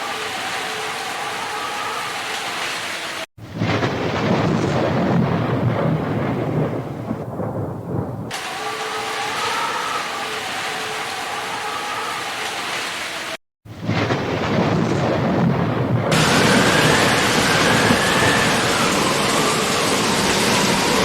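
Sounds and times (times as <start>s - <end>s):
heavy rain: 0.0s - 21.0s
thunder rumbling: 3.4s - 8.8s, 13.7s - 21.0s.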